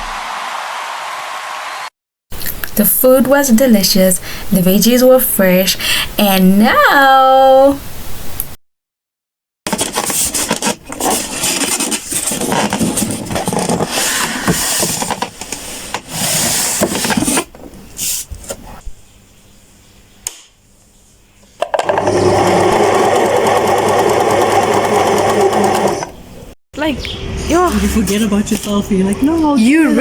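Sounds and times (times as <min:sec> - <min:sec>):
electric sewing machine running: 0:21.8 - 0:26.2.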